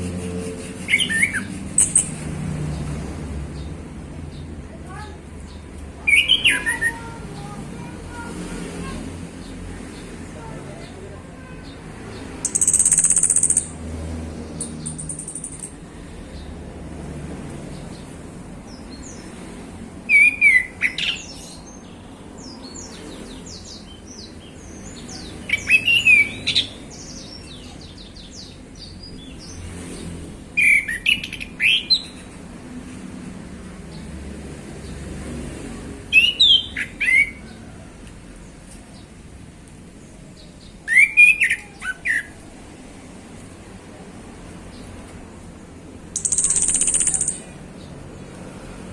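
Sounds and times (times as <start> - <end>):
thrush singing whistled trills: 0.6 - 2.2, 46.2 - 47.5.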